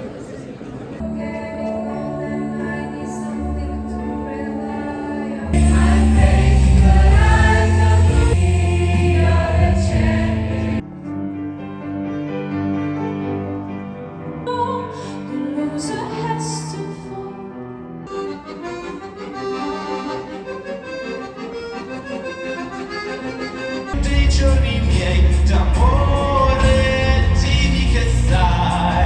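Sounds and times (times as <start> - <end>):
choir-like singing over held chords: 1.0 - 10.8, 23.9 - 29.0
heavy bass: 5.5 - 10.8, 24.0 - 29.0.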